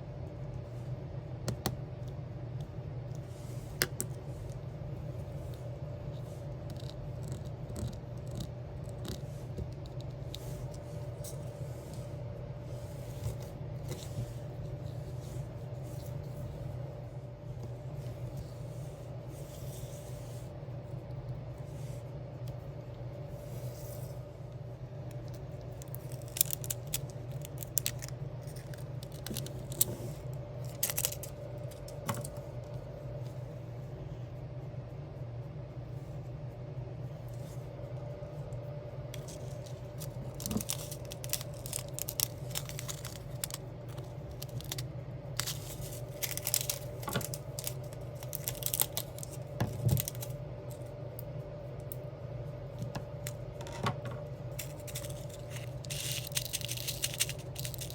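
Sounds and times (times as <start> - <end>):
steady low hum: 0.0 - 57.9.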